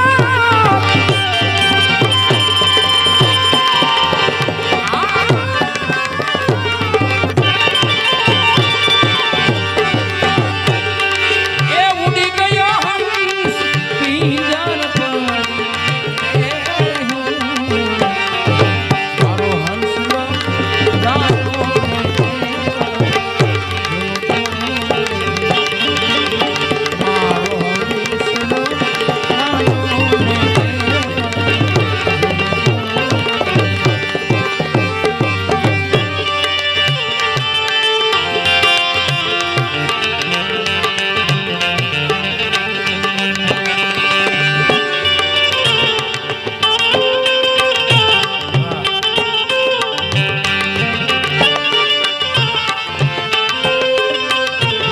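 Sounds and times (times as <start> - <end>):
sustained melody tones: 0.0 - 11.6
tabla rhythm: 0.0 - 54.9.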